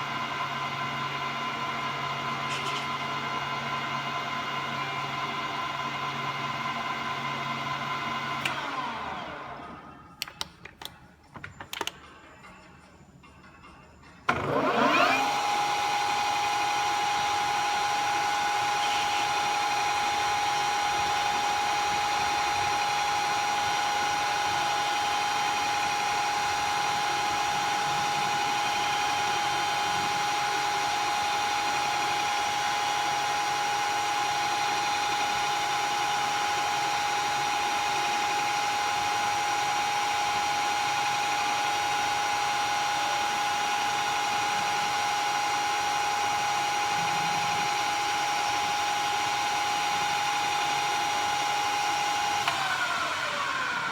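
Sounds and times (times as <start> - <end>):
milling machine spindle whine: 0.0 - 10.0, 14.3 - 53.9.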